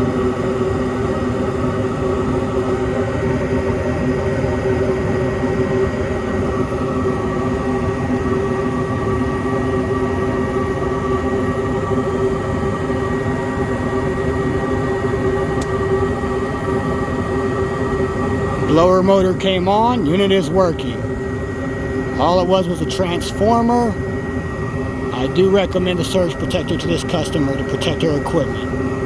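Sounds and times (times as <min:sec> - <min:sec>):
furnace inducer motor humming: 0:13.9 - 0:29.0.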